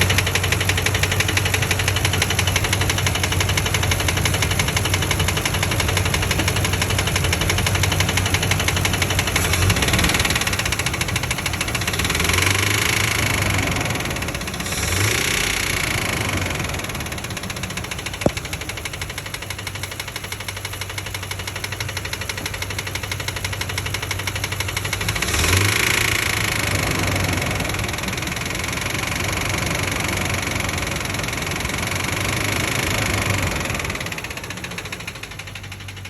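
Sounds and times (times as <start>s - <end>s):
engine knocking: 0.0s - 36.0s.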